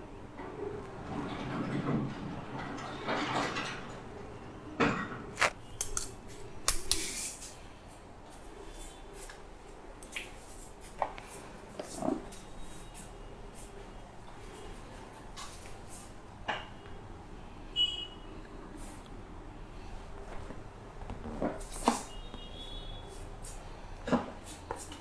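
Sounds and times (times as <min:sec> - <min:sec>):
sharp clicks and taps: 0:05.4 - 0:07.1.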